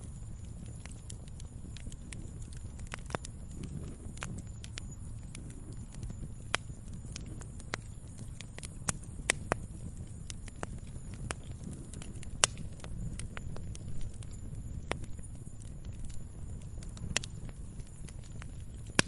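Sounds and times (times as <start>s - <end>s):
log fire crackling and popping: 0.0s - 19.0s
low rumble of flames: 0.0s - 19.0s.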